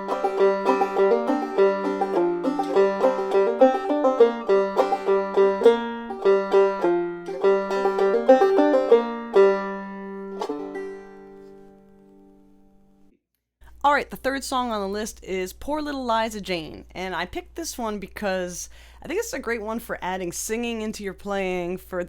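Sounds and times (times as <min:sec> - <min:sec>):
banjo playing lively tune: 0:00.0 - 0:11.8.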